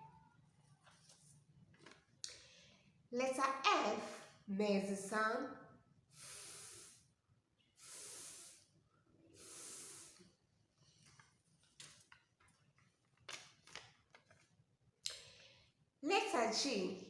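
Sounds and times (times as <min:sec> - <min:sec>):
person making f hiss: 0:06.1 - 0:07.1, 0:07.8 - 0:10.4
short breathy sounds: 0:06.1 - 0:07.1, 0:07.8 - 0:10.4
soft mouth clicks: 0:15.0 - 0:15.3.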